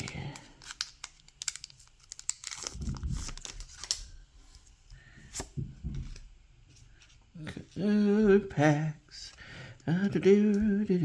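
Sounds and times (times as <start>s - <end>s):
foil wrapper tearing and crinkling: 0.0s - 4.0s.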